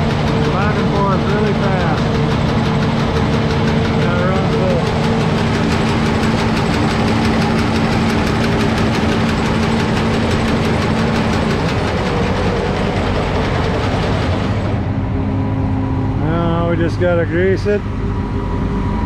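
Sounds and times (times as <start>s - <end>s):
combine engine humming: 0.0s - 19.0s
rapid mechanical clatter: 0.0s - 19.0s.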